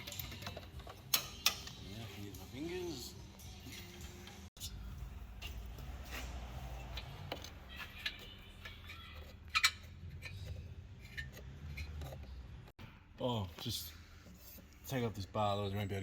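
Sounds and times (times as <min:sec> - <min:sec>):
metal parts clicking and tapping: 0:00.0 - 0:02.6, 0:06.8 - 0:12.5.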